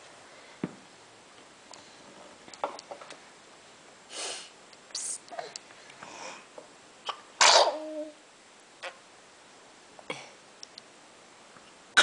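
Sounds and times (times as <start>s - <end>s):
baby sneezing: 7.0s - 8.0s.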